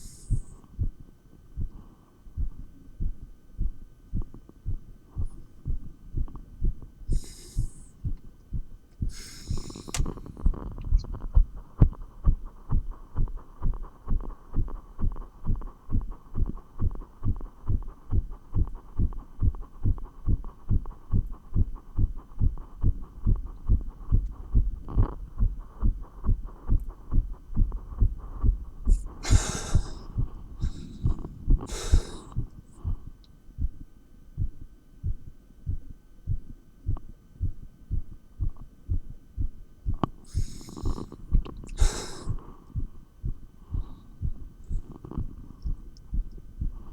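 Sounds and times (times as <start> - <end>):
heartbeat through stethoscope: 0.0 - 46.9
hissy bursts: 40.3 - 41.0.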